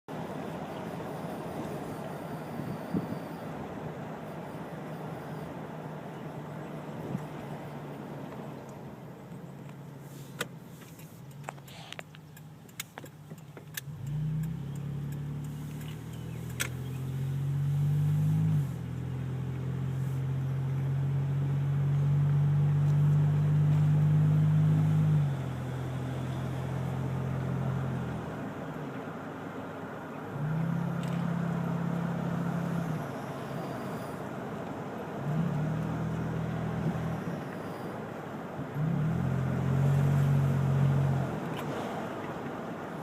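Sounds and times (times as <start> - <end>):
sharp clicks: 10.4 - 16.9.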